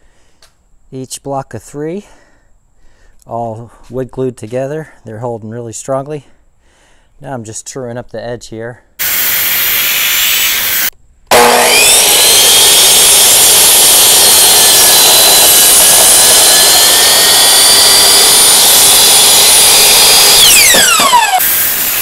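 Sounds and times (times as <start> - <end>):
power saw cutting wood: 9.0 - 22.0.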